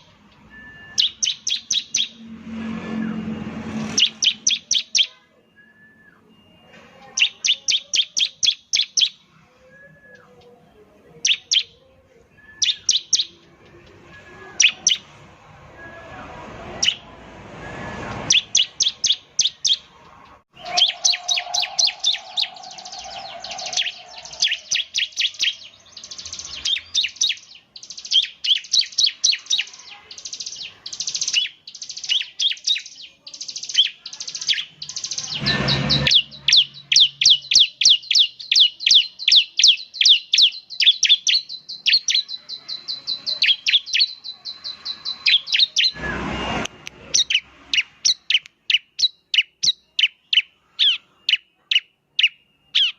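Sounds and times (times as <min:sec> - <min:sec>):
bird singing sharp chip notes: 0:00.0 - 0:05.2, 0:20.5 - 0:52.9
rushing noise: 0:01.9 - 0:04.6, 0:15.0 - 0:18.8, 0:20.2 - 0:25.0, 0:35.2 - 0:36.6, 0:44.8 - 0:47.7.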